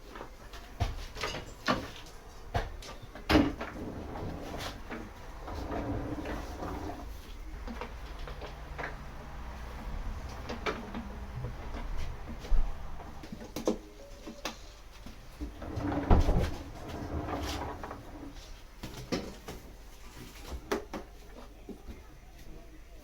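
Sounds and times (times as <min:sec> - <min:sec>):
knocks and clunks of handling: 0:10.2 - 0:22.0.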